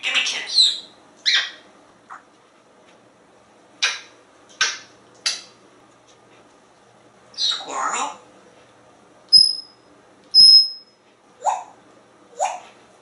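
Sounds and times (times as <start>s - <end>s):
parrot kissing smacks: 3.8s - 5.5s.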